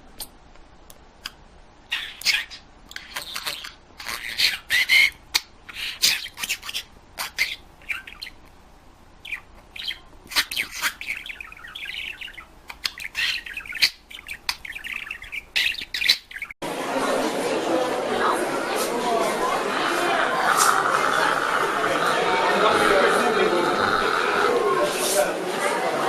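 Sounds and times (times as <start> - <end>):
parrot chattering: 1.9 - 8.4, 9.2 - 16.6, 20.0 - 25.0
parrot squawking and chirping: 1.9 - 8.4, 9.2 - 16.6.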